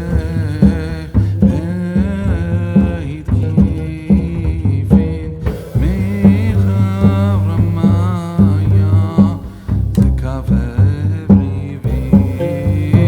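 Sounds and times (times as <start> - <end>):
music with deep bass and beat: 11.8 - 13.0.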